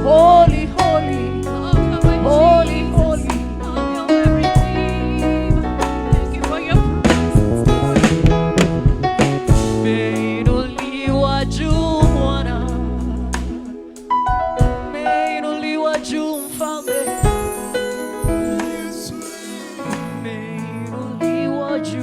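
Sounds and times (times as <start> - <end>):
person singing: 0.0 - 8.3, 9.1 - 22.0
held bass notes: 0.0 - 13.6
drum hits: 4.2 - 4.9, 5.5 - 11.0, 14.2 - 15.1, 17.2 - 20.3.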